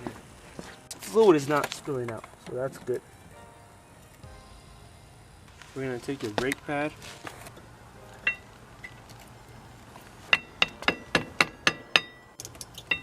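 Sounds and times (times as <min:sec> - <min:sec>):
light metal tapping with ringing: 0:08.2 - 0:09.0, 0:10.3 - 0:13.0.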